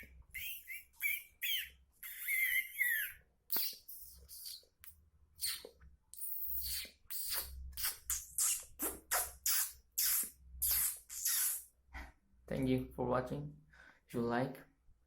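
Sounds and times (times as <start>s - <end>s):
person making hissing mouth sounds: 0.0s - 11.8s.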